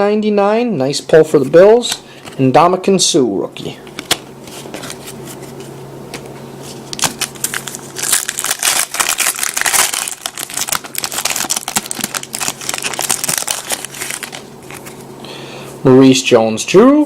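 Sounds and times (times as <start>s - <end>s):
steady low hum: 0.0s - 17.0s
foil pack clicks: 6.9s - 14.8s
foil pack crinkling and tearing: 6.9s - 15.0s.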